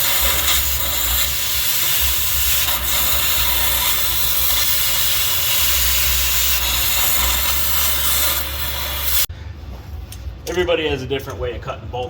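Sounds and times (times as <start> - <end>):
cutting torch hissing: 0.0 - 9.3.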